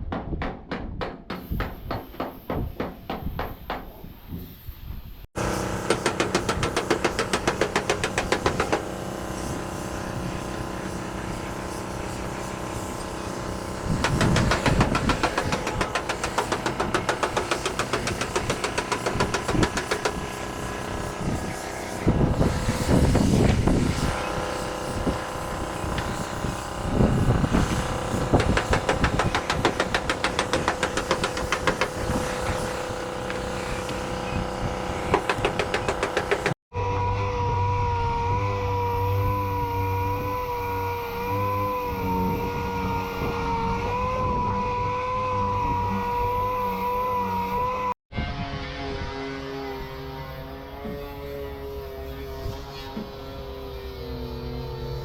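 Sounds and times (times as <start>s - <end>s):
engine running with fast ticking: 5.4s - 36.6s.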